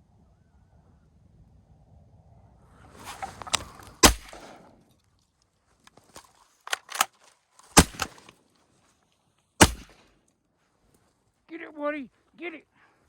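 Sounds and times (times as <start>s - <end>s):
shotgun shots: 4.0s - 4.7s, 7.8s - 8.2s, 9.6s - 10.0s.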